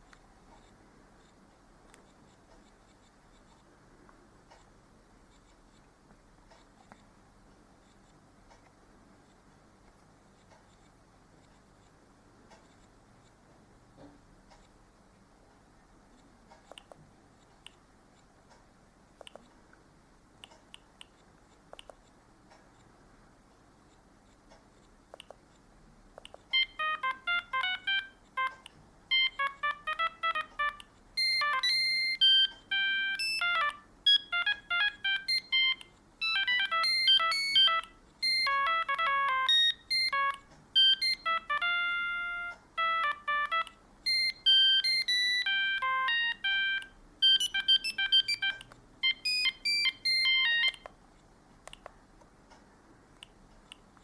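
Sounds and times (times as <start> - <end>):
faint clicks: 23.9 - 26.5
phone ringtone melodies: 26.5 - 50.9.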